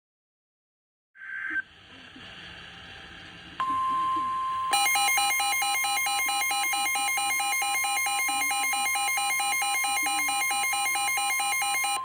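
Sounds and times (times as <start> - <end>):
fast two-pitch beeping: 3.6 - 12.0
steady warning alarm tone: 3.6 - 12.0.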